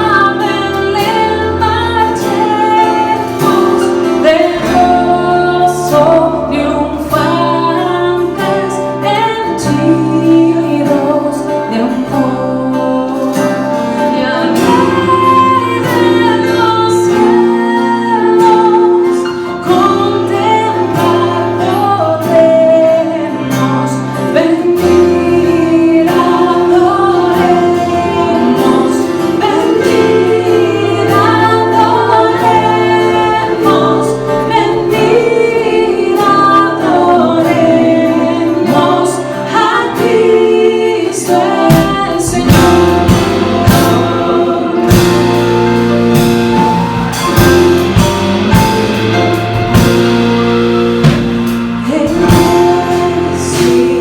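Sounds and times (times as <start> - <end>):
choir singing a hymn: 0.0 - 54.0
drum kit: 0.0 - 54.0
instrumental accompaniment: 0.0 - 54.0
deep bass: 19.7 - 39.4, 41.2 - 54.0.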